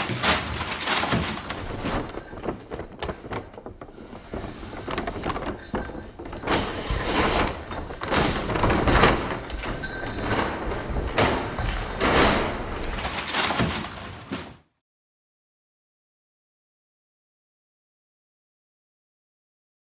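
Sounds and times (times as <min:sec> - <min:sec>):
paper bag rustling and crinkling: 0:00.0 - 0:06.0, 0:13.0 - 0:14.6.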